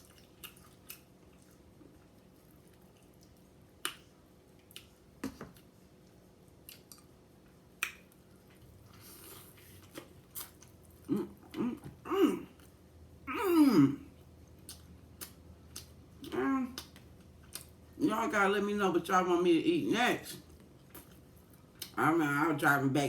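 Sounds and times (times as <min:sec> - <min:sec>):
quiet chewing: 0:00.0 - 0:12.8, 0:14.0 - 0:18.0, 0:20.3 - 0:22.0
wet mouth clicks and lip smacks: 0:03.2 - 0:04.1, 0:07.8 - 0:08.2.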